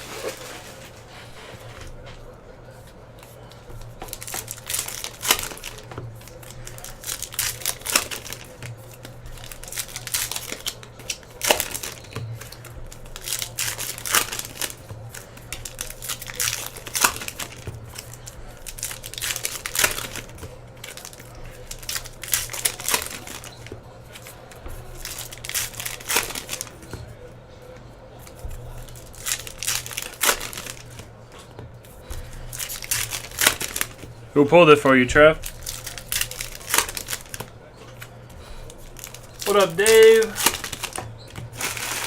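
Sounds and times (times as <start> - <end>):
wrappers torn and crinkled: 4.1 - 24.3, 24.9 - 26.8, 28.6 - 31.1, 32.5 - 34.0, 35.4 - 42.0.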